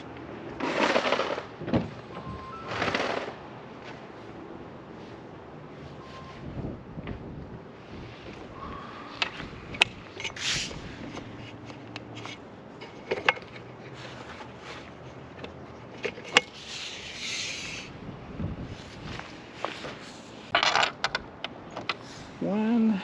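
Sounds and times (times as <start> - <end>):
rustle: 0.0 - 23.0.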